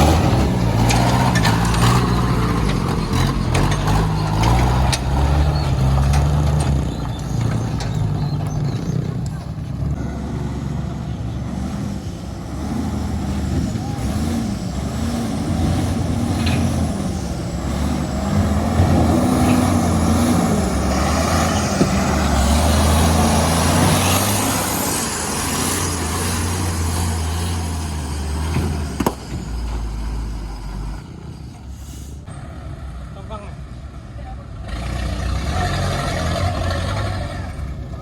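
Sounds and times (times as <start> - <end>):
old truck engine running hard: 0.0 - 38.0
sharp crack: 28.8 - 29.4.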